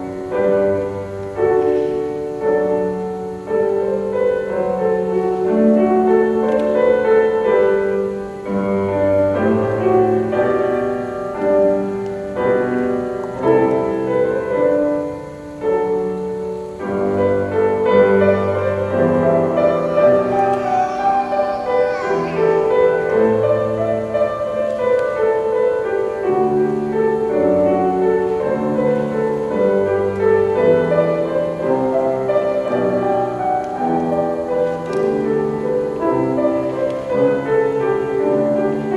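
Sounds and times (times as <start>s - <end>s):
piano ceremony music: 0.0s - 38.9s.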